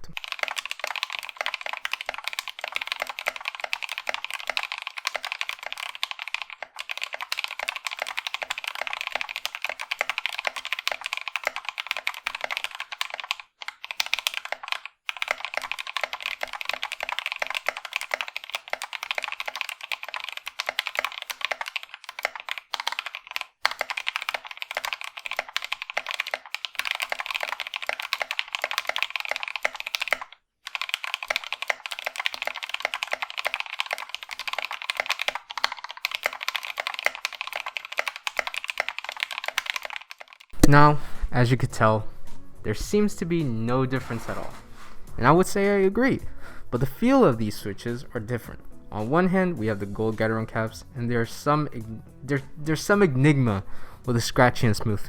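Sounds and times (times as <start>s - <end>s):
mechanical keyboard typing: 0.0s - 40.9s.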